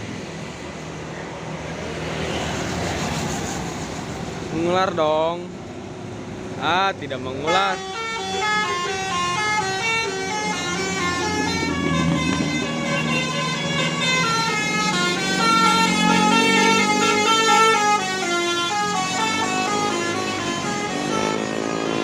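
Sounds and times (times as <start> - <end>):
bus engine: 0.0 - 22.0
multi-tone musical horn melody: 7.4 - 22.0.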